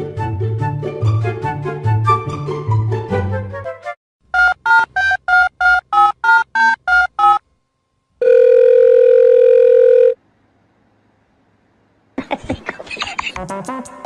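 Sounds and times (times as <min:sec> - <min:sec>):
steady telephone tone: 0:08.2 - 0:10.2.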